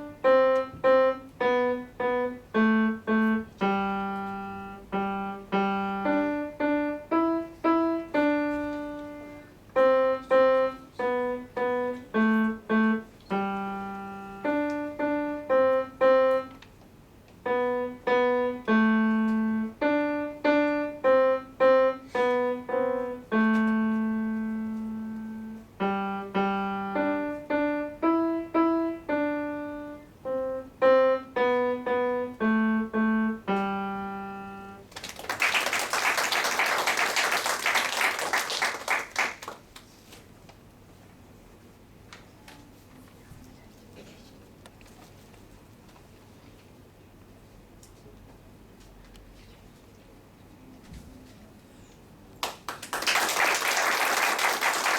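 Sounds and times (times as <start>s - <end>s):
solo piano melody: 0.0s - 16.6s, 17.4s - 34.9s.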